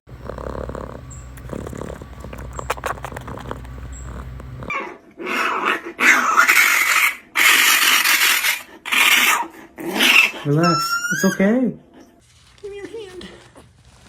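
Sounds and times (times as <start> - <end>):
low hum: 0.1 - 4.7
raccoon growling: 0.1 - 11.4.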